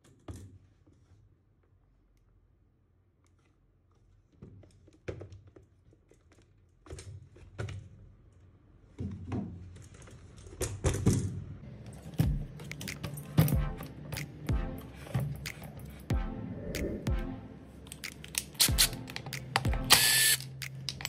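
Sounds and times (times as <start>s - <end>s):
tools clicking and knocking on bench: 11.9s - 16.1s.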